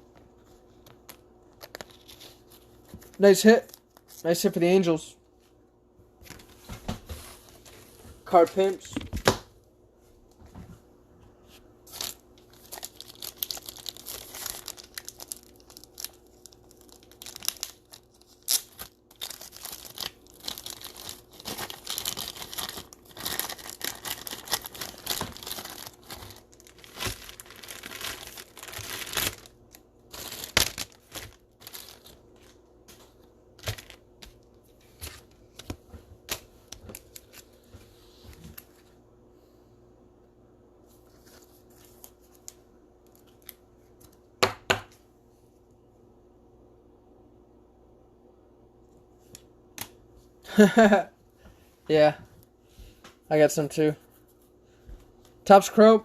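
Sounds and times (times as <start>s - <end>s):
plastic sleeve crinkling: 0.3s - 4.9s, 11.8s - 37.6s.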